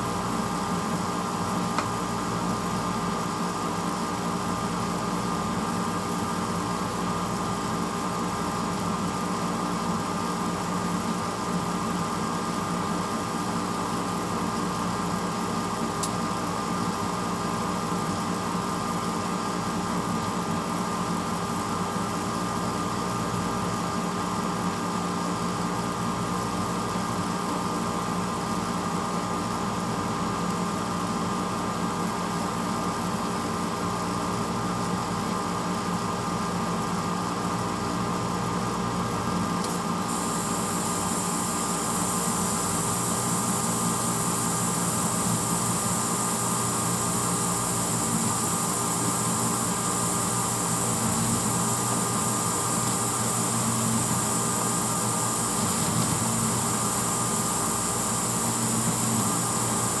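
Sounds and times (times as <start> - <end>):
dishwasher motor humming: 36.5 - 60.0
hiss of washing water: 39.7 - 60.0
higher bright hiss: 40.1 - 60.0.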